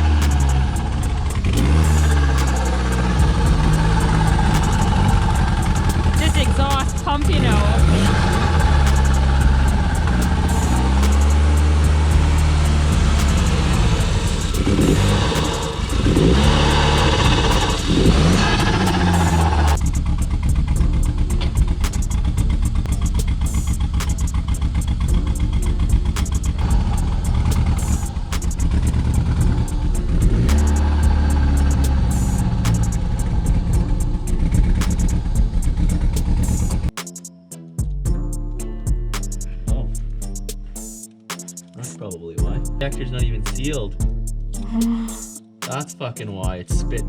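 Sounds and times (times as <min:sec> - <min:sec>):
misfiring engine revving: 0:00.0 - 0:36.9
engine spitting and popping: 0:00.0 - 0:37.0.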